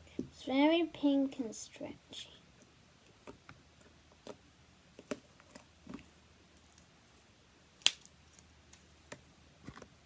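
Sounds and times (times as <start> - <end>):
slime squelching: 3.0 - 6.9.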